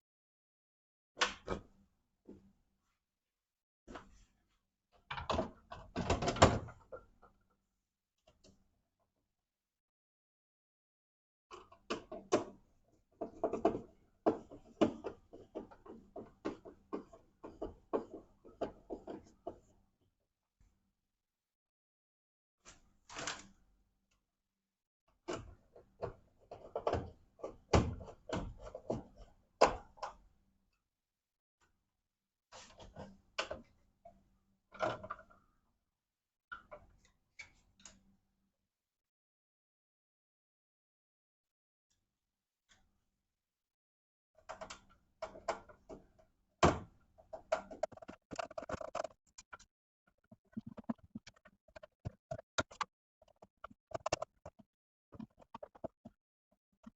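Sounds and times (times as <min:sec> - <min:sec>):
hard objects knocking and clattering: 0:47.4 - 0:54.6, 0:55.2 - 0:56.2
tool clicks and taps: 0:47.4 - 0:56.2.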